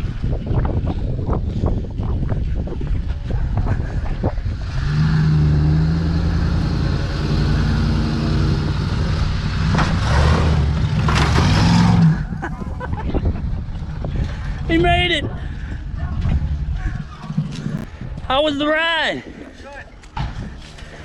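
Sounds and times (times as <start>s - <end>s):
vehicle engine running under load: 4.4s - 12.5s
rough scraping crunching: 16.1s - 18.1s.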